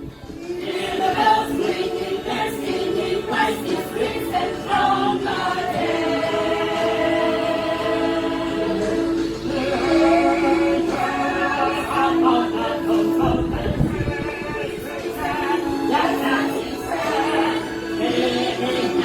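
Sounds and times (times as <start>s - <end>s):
choir singing in harmony: 0.3s - 19.0s.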